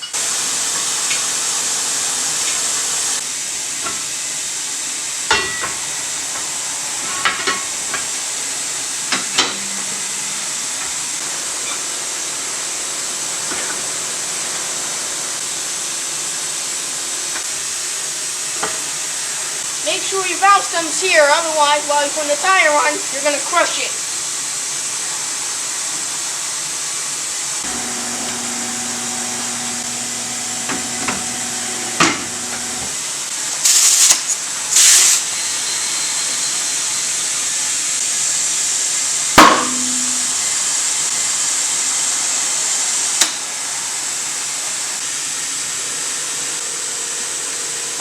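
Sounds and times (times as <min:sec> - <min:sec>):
steady air hiss: 0:00.2 - 0:39.4
tire-changer motor humming: 0:27.6 - 0:33.5
short air blasts: 0:33.6 - 0:35.2.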